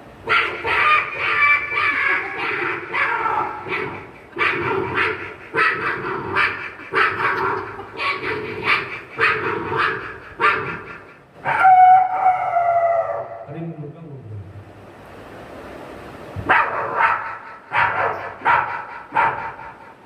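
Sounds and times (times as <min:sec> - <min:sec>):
person imitating dog barks: 0:00.3 - 0:13.5.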